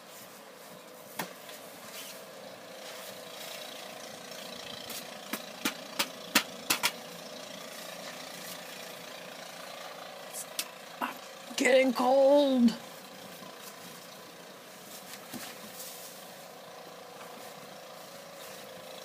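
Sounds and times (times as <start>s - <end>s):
car engine idling: 1.0s - 19.0s
sharp knocks: 5.3s - 7.0s.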